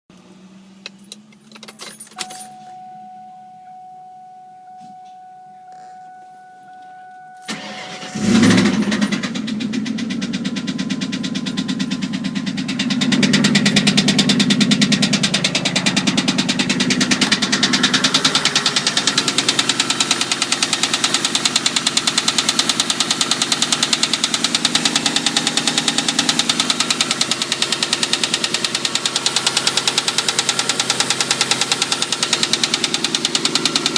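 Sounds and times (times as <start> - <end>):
car engine starting and idling: 0.1 - 33.9
faint steady tone: 2.1 - 8.2
engine knocking: 7.8 - 33.9.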